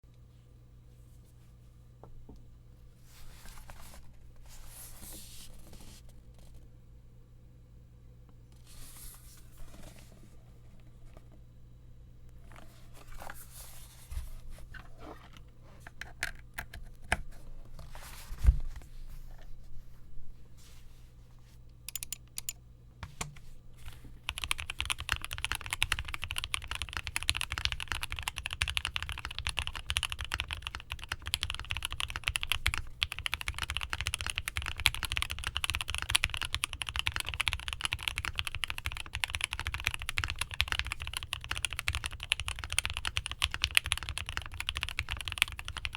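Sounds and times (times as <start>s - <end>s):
mechanical keyboard typing: 21.9s - 22.6s, 24.2s - 45.9s.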